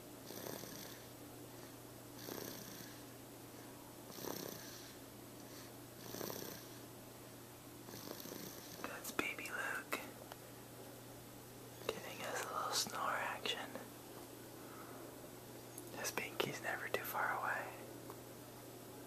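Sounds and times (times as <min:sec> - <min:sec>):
steady low hum: 0:00.0 - 0:19.0
slow snoring: 0:00.2 - 0:03.1, 0:04.1 - 0:06.9, 0:07.8 - 0:08.8.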